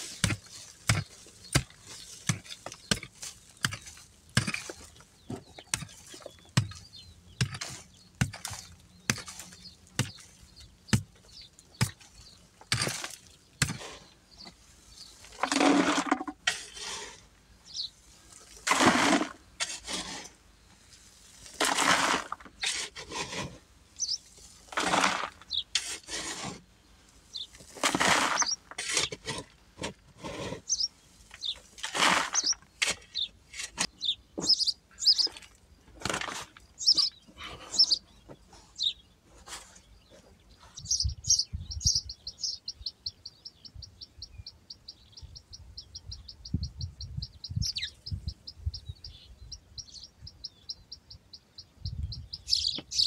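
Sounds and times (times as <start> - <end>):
rough sawing strokes: 15.3 - 17.2, 18.6 - 20.4, 21.3 - 23.6, 24.7 - 26.6.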